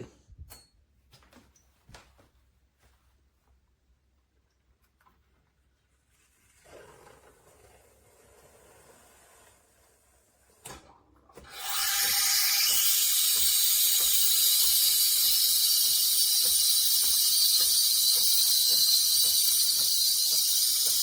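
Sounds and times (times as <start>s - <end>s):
loud hiss of steam: 11.6s - 21.0s.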